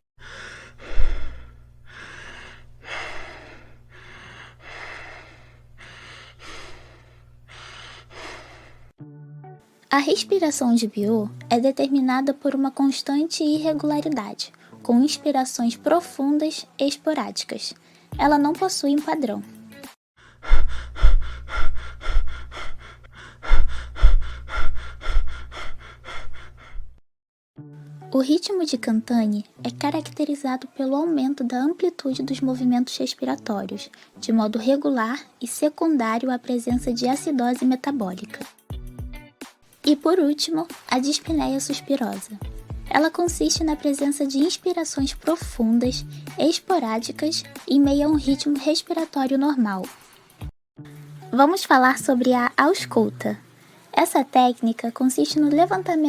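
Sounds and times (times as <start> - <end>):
deep noisy breathing: 0.2 - 9.0, 20.2 - 27.0
low steady hum: 0.2 - 9.0.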